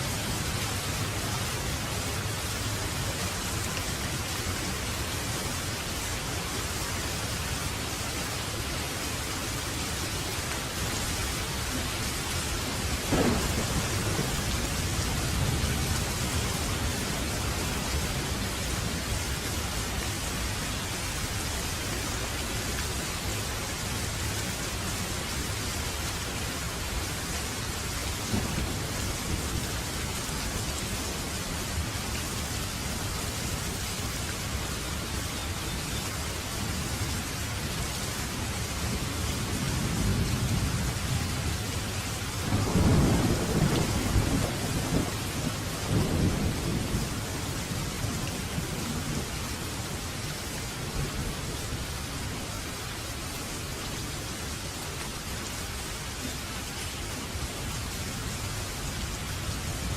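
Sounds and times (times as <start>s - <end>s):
steady rain: 0.0s - 59.9s
thunder clap and rumble: 11.8s - 19.1s, 28.3s - 31.9s, 42.4s - 49.4s.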